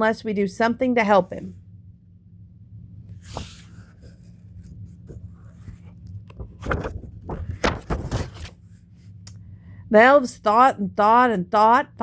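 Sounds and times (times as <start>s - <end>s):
steady low hum: 0.0s - 12.0s
book pages turning: 3.2s - 8.7s
light paper rustles and taps: 5.2s - 8.6s.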